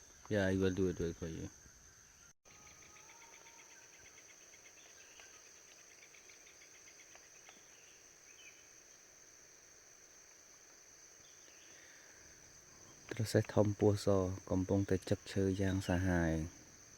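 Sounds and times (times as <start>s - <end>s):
insects droning: 0.0s - 16.9s.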